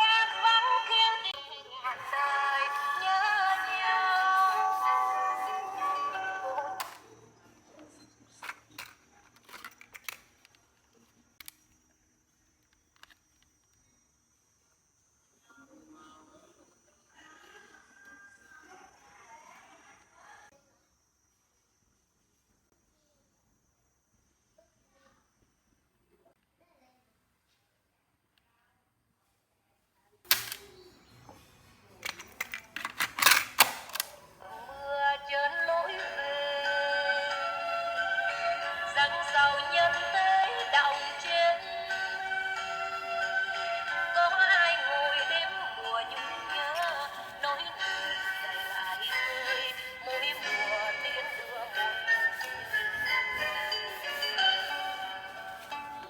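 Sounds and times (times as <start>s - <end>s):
music from cassette tape: 0.0s - 7.0s, 35.1s - 56.0s.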